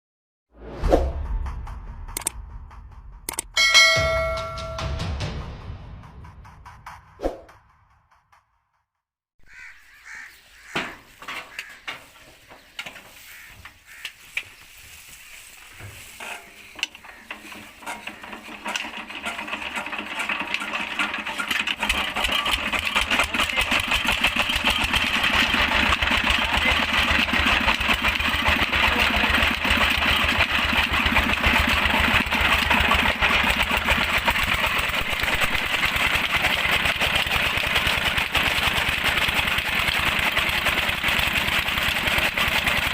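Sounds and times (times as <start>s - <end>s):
diesel engine running: 14.9s - 42.9s
knocks and clatter: 15.7s - 42.9s.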